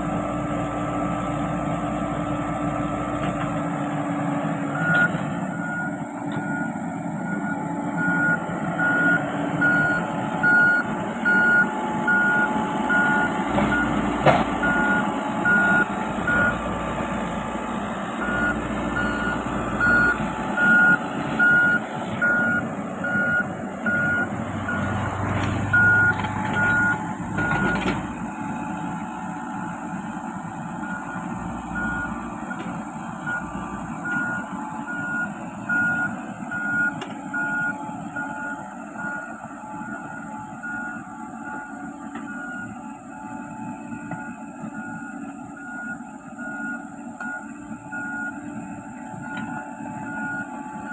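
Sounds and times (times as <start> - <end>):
diesel engine running: 0.0 - 50.9
travel alarm beeping: 4.8 - 14.0, 14.6 - 16.6, 18.2 - 24.8, 25.7 - 27.9, 33.2 - 48.5, 49.2 - 50.9.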